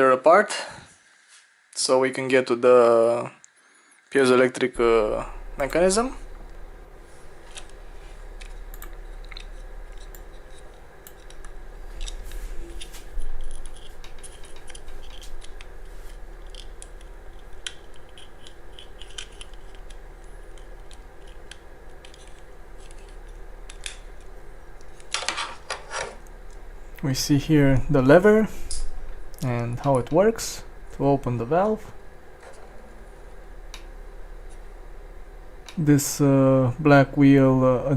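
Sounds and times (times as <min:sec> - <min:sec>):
plastic parts clicking and snapping: 0:16.4 - 0:26.2.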